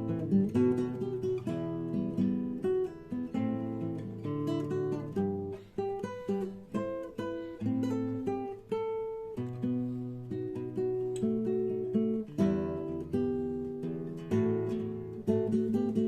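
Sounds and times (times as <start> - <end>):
acoustic guitar strumming chords: 0.0 - 16.0.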